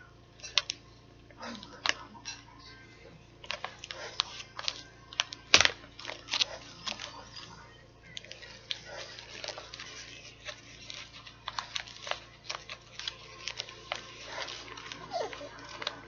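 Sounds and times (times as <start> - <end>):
packaging crinkling: 3.4 - 16.0.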